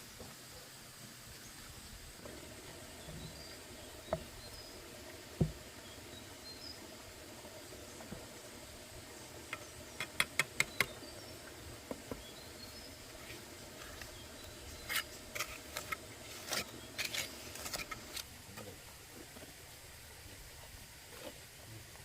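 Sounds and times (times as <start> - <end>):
scraping and rustling: 13.2 - 18.3.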